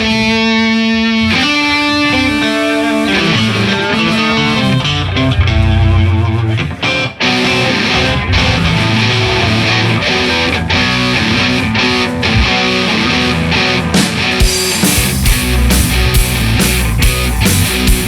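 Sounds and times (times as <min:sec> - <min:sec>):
electric guitar playing rock: 0:00.0 - 0:18.0
low bass: 0:04.4 - 0:06.8, 0:07.4 - 0:18.0.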